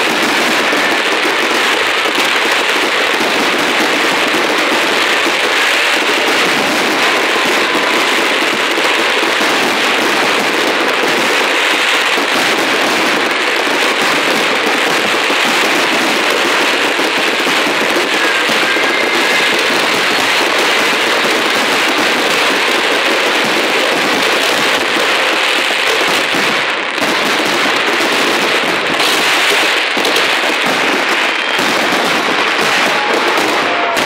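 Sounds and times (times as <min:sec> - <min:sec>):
fireworks crackling: 0:00.0 - 0:34.0.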